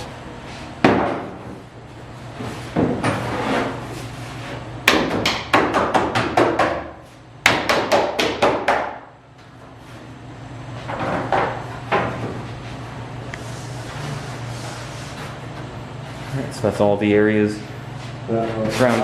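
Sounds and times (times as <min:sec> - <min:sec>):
steady low hum: 0:00.0 - 0:19.0
sharp hammering knocks: 0:04.8 - 0:09.0.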